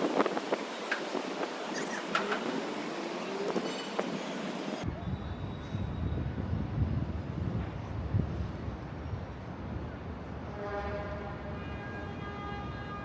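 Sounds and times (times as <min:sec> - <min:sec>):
city traffic rumble: 0:00.0 - 0:13.0.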